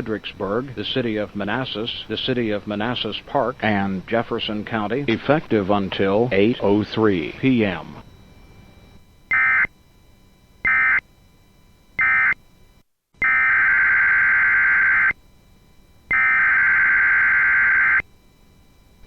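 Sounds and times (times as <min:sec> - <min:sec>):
harsh digital data bursts: 0:09.3 - 0:09.7, 0:10.6 - 0:11.0, 0:12.0 - 0:12.4, 0:13.2 - 0:15.2, 0:16.1 - 0:18.0.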